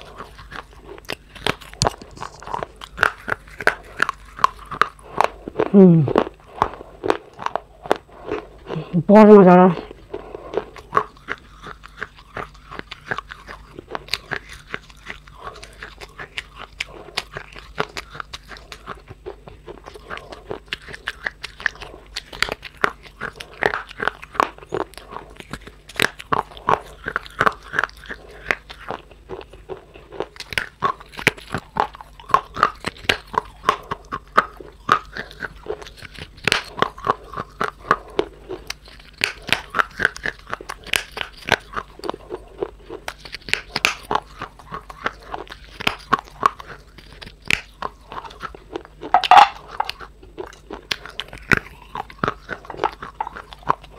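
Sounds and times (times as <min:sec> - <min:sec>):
brittle crunching: 0:00.0 - 0:06.4, 0:42.8 - 0:53.9.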